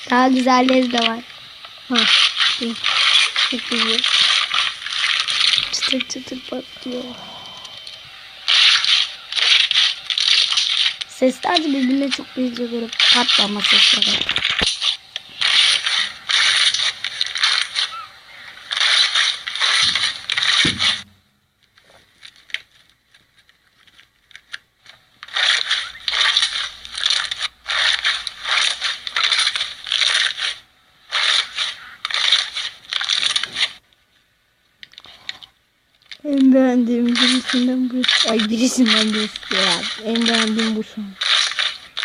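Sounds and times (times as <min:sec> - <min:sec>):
crunchy slime crackling and popping: 0:25.2 - 0:33.8, 0:37.1 - 0:42.0.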